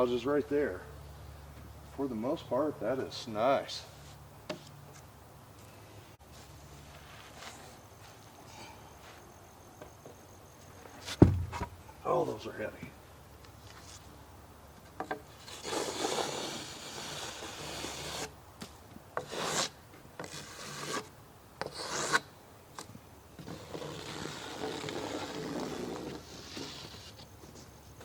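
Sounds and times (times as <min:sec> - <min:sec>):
sharp knock: 0:11.2 - 0:11.8.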